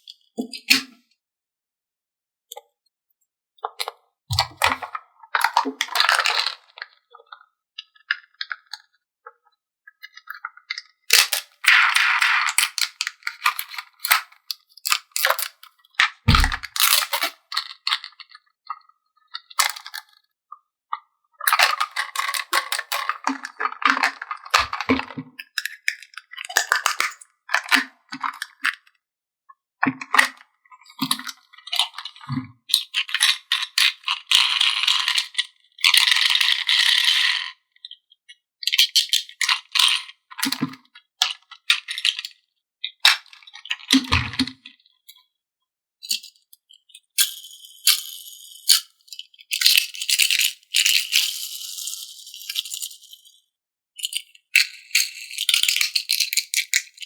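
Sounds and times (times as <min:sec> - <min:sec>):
plastic toy pieces clicking: 0:11.1 - 0:15.7, 0:16.4 - 0:18.1, 0:21.5 - 0:24.9, 0:46.0 - 0:53.4, 0:54.0 - 0:57.0.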